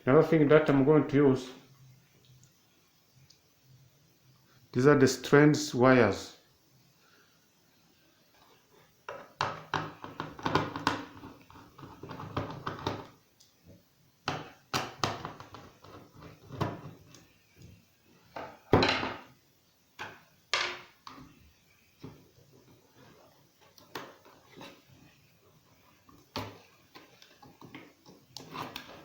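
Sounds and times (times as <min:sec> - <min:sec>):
objects scraping and rattling: 0:26.6 - 0:29.0.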